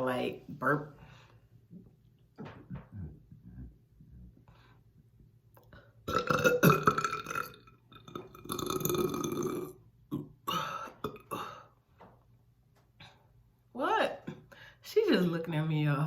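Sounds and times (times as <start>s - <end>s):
woman burping: 6.1s - 11.8s.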